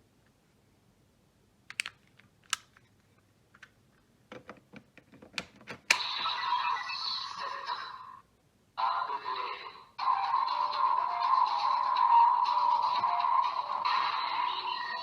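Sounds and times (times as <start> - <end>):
plastic toy clicks: 1.7 - 2.8
electronic toy sound effect: 5.9 - 8.1.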